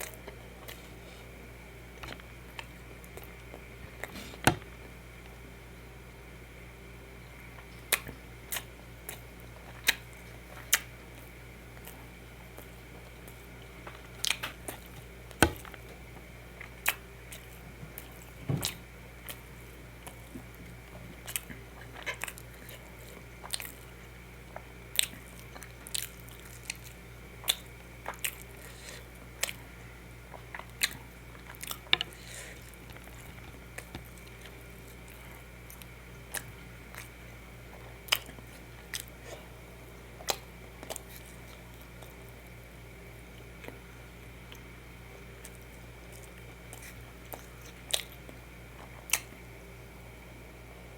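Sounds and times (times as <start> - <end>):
chewing and biting: 7.6 - 16.0, 16.6 - 29.6, 30.3 - 39.5, 40.2 - 42.4, 45.4 - 49.4.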